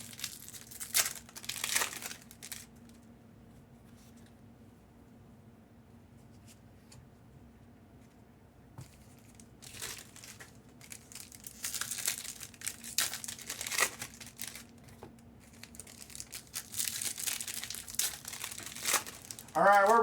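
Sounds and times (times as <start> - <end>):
plastic wrapping crinkling and tearing: 0.0 - 2.9, 9.2 - 20.0.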